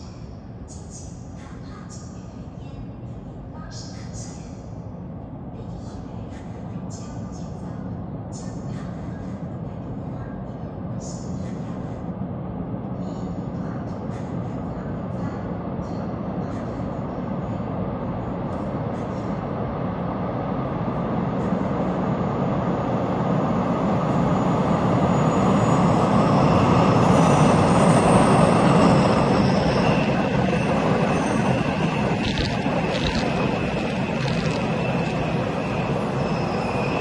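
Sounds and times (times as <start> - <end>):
train rumbling: 0.0 - 37.0
high-pitched whine: 22.1 - 37.0.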